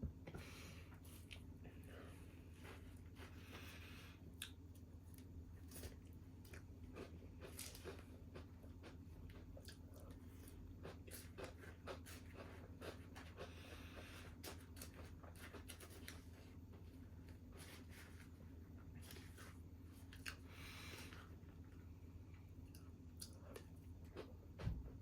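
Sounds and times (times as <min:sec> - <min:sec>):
low steady hum: 0:00.0 - 0:25.0
chewing clicks and crunches: 0:04.4 - 0:13.5, 0:20.0 - 0:20.4, 0:22.7 - 0:24.3.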